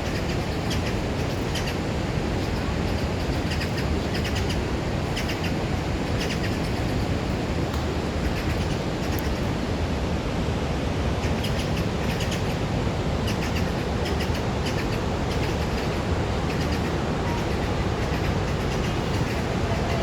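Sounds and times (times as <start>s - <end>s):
waterfall rushing: 11.2s - 20.0s.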